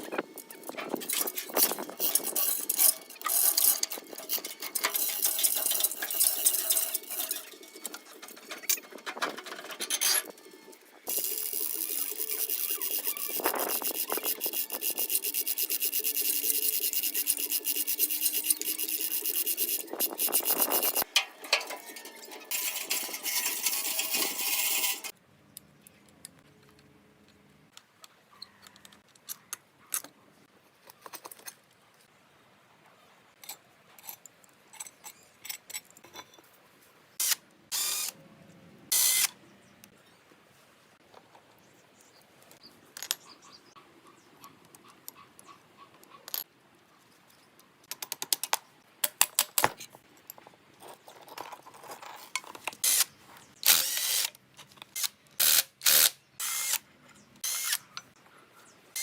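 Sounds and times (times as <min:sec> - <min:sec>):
hand tool scraping: 0:00.0 - 0:25.1.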